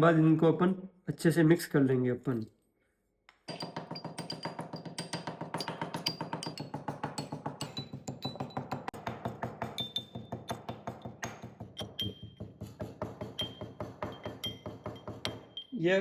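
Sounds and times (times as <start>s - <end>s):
metal pestle pounding spices: 3.5s - 15.6s.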